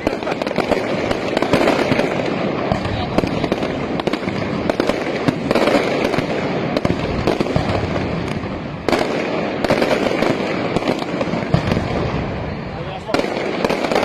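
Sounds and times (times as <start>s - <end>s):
fireworks crackling and banging: 0.0s - 14.0s.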